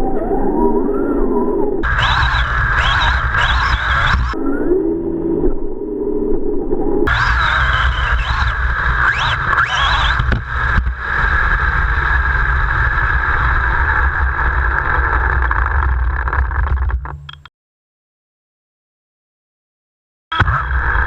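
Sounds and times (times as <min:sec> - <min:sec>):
electric motor whining: 0:01.8 - 0:04.4, 0:07.1 - 0:15.3
rumble of wheels and wind: 0:07.1 - 0:17.4.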